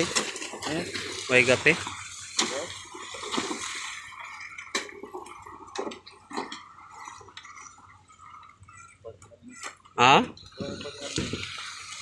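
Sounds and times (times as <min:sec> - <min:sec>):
wet concrete sloshing and splattering: 0:00.0 - 0:08.8.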